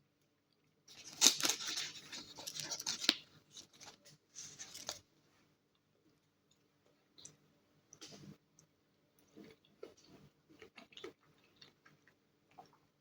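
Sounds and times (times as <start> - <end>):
chewing with mouth clicks: 8.0 - 12.9.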